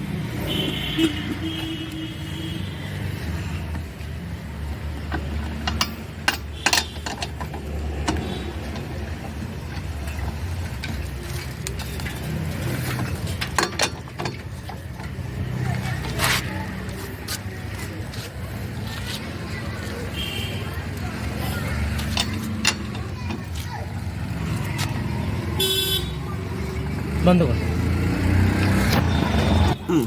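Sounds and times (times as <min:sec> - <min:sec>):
wheel brace clicking on nuts: 0:03.7 - 0:25.4.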